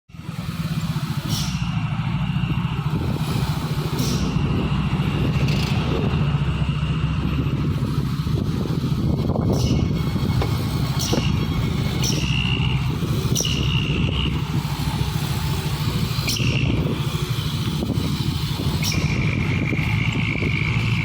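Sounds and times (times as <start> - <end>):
diesel engine rumbling: 0.1 - 21.0.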